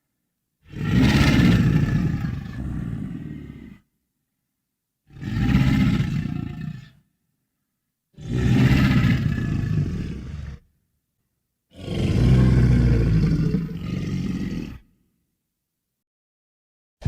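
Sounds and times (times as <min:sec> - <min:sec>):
deep dinosaur roars: 0:00.7 - 0:03.8, 0:05.1 - 0:07.0, 0:08.2 - 0:10.7, 0:11.7 - 0:15.0.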